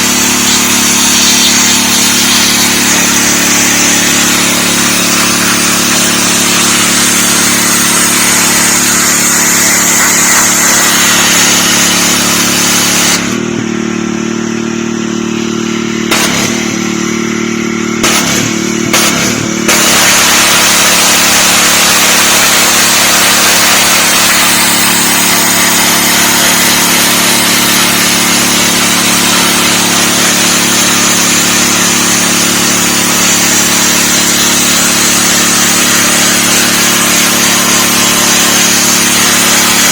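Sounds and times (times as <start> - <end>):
high-pressure water spray hissing: 0.0 - 13.6, 16.1 - 17.2, 18.0 - 39.9
pressure washer engine humming: 0.0 - 39.9.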